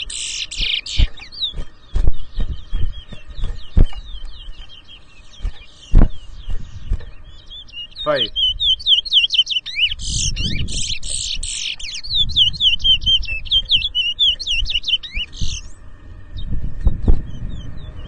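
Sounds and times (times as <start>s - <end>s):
finch singing whistled notes: 0.0s - 18.0s
thumps: 1.0s - 4.6s, 5.4s - 7.2s
low rumble: 12.0s - 18.0s.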